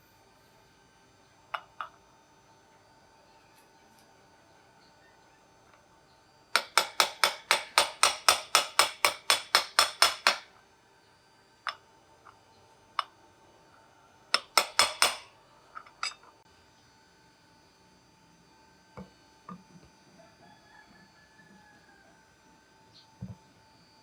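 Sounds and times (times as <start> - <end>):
hammer tapping on metal: 6.6 - 10.5, 14.4 - 15.3.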